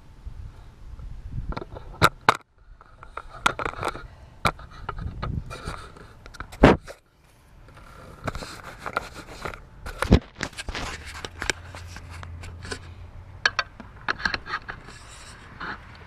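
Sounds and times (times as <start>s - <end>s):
low steady hum: 0.0s - 16.0s
hands working metal gate hardware: 7.8s - 16.0s.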